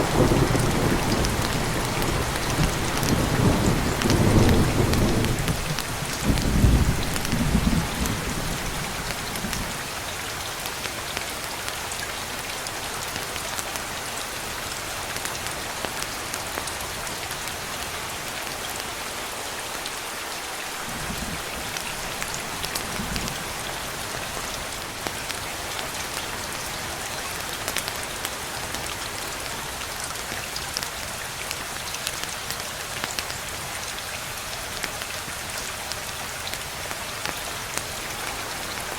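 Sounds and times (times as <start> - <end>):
low rumble of thunder: 0.0 - 9.8, 20.9 - 23.8
steady rain falling: 0.0 - 38.9.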